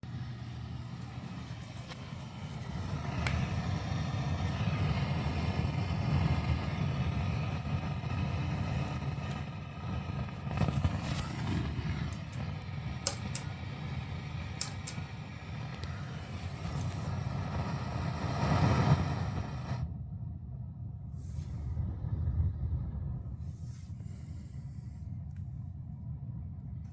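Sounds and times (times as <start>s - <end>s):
amplifier low rumbling hiss: 0.0s - 26.9s
sharp clicks: 12.1s - 13.6s, 14.5s - 15.1s.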